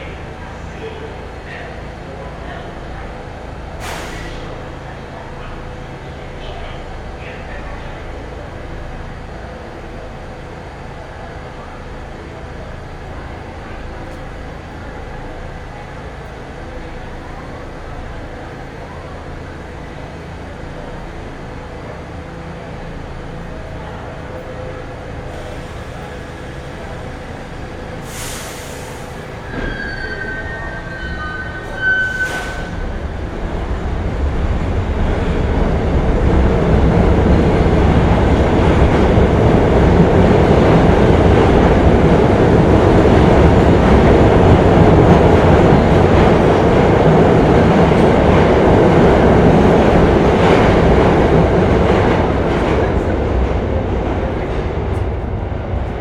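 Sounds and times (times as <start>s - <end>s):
train rumble approaching: 0.0s - 56.0s
short hisses: 3.8s - 4.5s
train wheels squealing: 29.4s - 32.8s.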